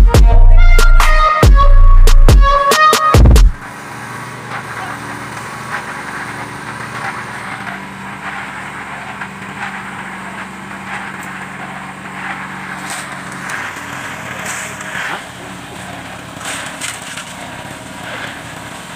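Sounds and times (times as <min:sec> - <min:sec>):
engine running steadily: 0:00.0 - 0:18.9
scraping and knocking: 0:05.6 - 0:18.4.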